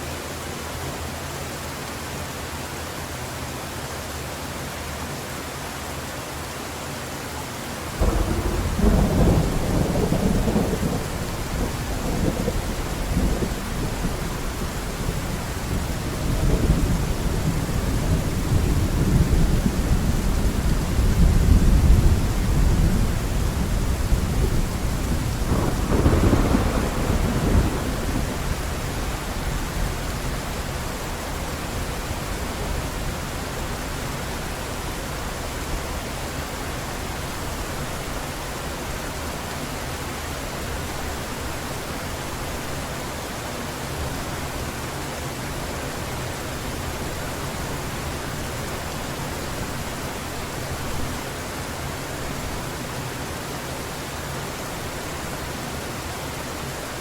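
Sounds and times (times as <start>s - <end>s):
heavy rain falling: 0.0s - 57.0s
thunder rumbling: 8.0s - 33.2s.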